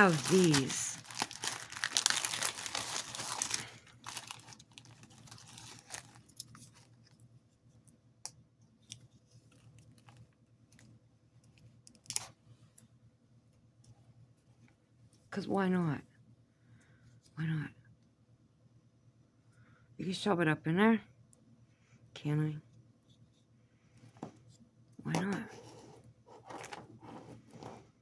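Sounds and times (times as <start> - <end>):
plastic packaging crinkling: 0.0 - 7.1.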